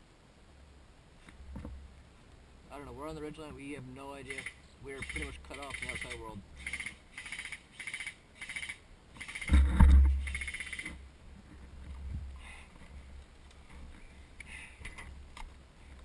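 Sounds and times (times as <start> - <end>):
small animal trilling calls: 4.3 - 9.5, 10.2 - 11.0.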